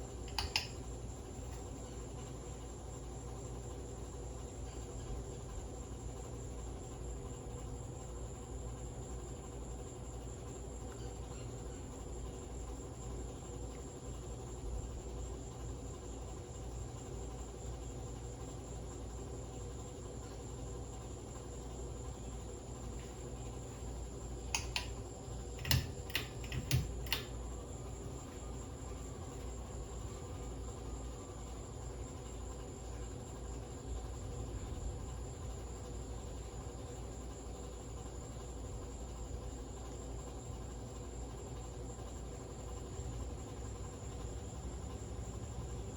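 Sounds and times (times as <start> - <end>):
ceiling fan motor hum: 0.0 - 45.9
sharp clicks: 0.3 - 0.8, 24.5 - 27.4.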